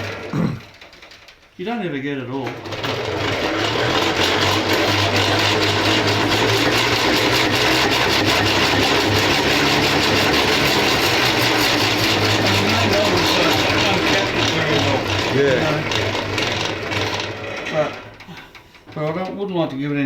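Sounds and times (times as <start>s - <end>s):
honey extractor spinning: 0.0s - 20.0s.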